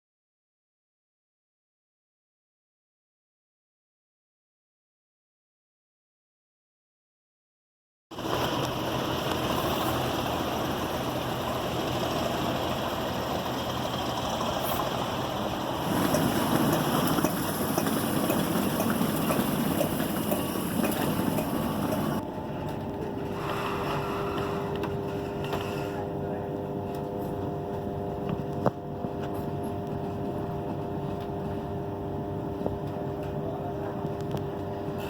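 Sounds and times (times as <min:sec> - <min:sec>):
passenger train rumble: 0:08.2 - 0:25.1.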